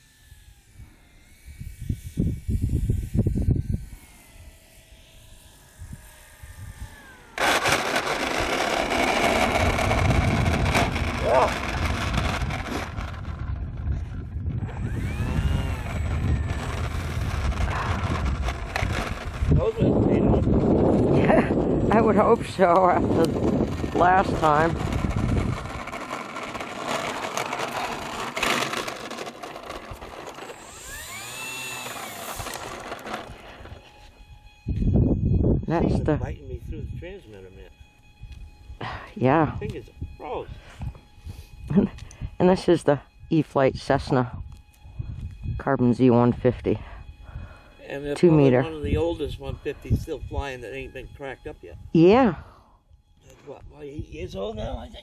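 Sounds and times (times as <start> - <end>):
wind hiss: 0.0 - 26.0
electric motor whine: 0.0 - 55.0.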